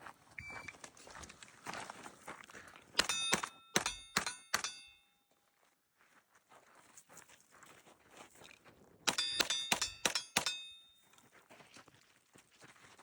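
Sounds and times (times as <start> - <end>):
airsoft shots: 3.0 - 4.8
metallic ping of pellet strikes: 3.0 - 5.0, 9.1 - 10.8.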